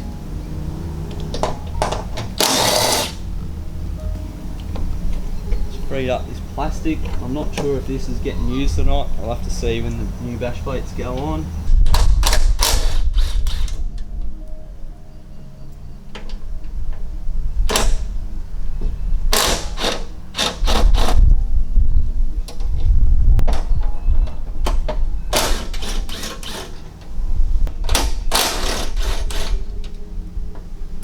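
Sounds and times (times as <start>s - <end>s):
power tool undoing bolts: 1.2s - 3.2s, 11.2s - 13.8s, 17.7s - 18.1s, 19.3s - 21.2s, 24.6s - 26.9s, 27.7s - 30.0s.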